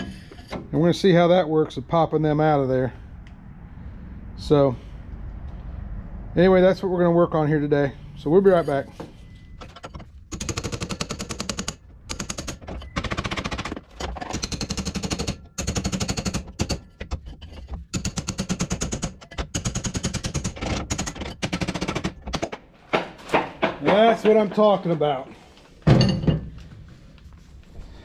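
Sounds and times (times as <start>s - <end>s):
pneumatic hammer bursts: 10.3s - 16.9s.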